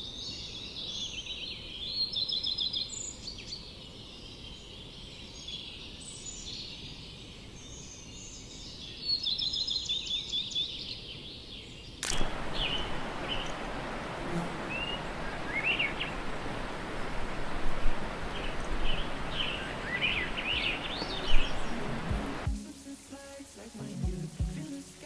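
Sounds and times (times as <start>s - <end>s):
small birds singing: 0.0s - 25.0s
click: 12.0s - 12.4s
steady hiss: 12.0s - 25.0s.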